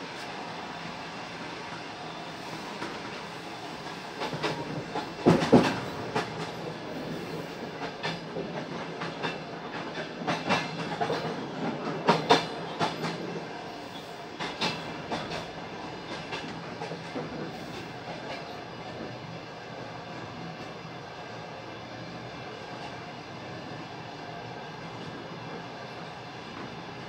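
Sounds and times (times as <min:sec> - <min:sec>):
train wheels clattering over rail joints: 0:04.2 - 0:19.1.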